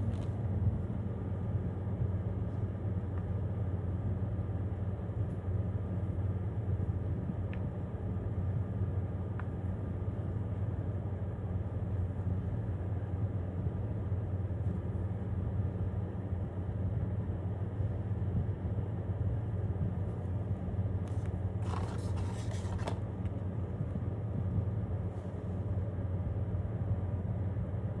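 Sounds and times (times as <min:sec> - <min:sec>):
rustling: 0:21.1 - 0:23.0.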